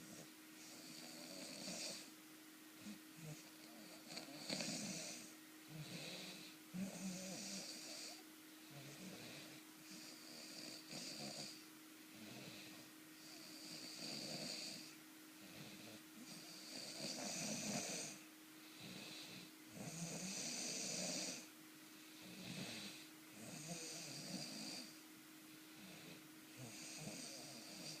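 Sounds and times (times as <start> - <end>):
person snoring: 0.0 - 2.1, 2.8 - 11.6, 12.2 - 18.2, 18.8 - 21.5, 22.2 - 25.0, 25.8 - 28.0
faint steady hum: 0.0 - 28.0.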